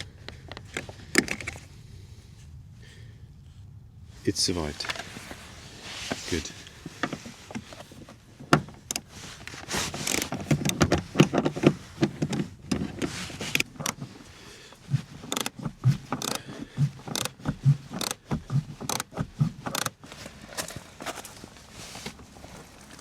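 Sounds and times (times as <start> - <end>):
car trim clicks and scrapes: 0.3 - 1.7, 4.8 - 23.0
dull thuds: 6.8 - 20.1.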